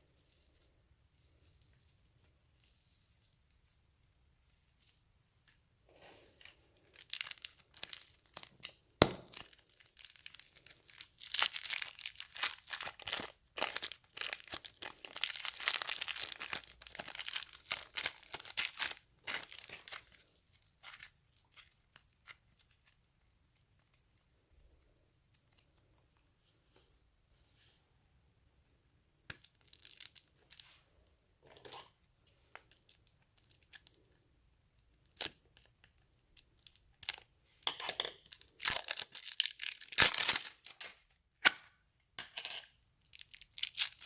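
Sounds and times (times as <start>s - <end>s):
slime crackling and tearing: 6.9s - 22.4s, 38.3s - 40.8s, 43.1s - 44.0s.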